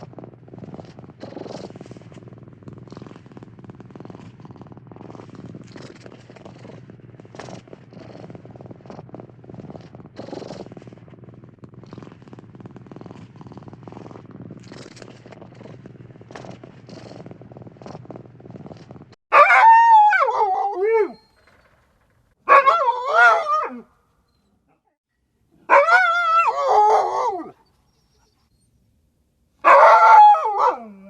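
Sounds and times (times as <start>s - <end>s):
cat purring: 0.0s - 19.2s
dog howling: 19.3s - 21.3s, 22.5s - 23.8s, 25.7s - 27.6s, 29.7s - 31.0s.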